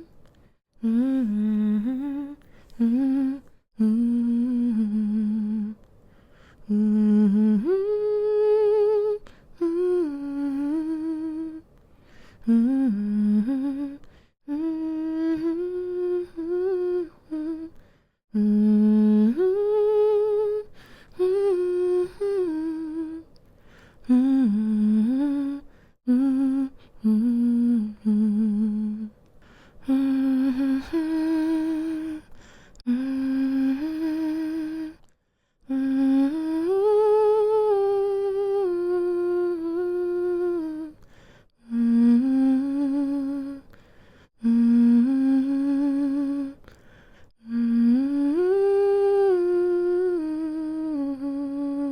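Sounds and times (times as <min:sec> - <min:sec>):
woman humming a lullaby: 0:06.7 - 0:11.6, 0:12.4 - 0:23.3, 0:29.8 - 0:35.0, 0:47.4 - 0:51.9.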